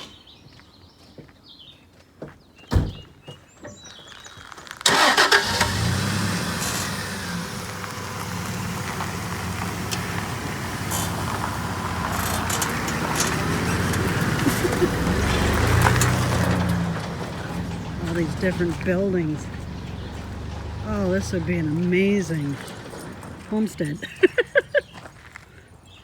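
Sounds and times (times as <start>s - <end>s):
vehicle engine starting and running: 4.8s - 25.4s.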